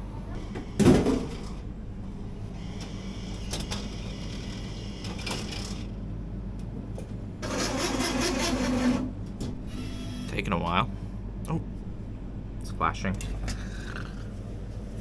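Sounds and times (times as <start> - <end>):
vending machine humming: 0.0 - 15.0
machine working noisily: 2.3 - 6.0, 7.4 - 10.6.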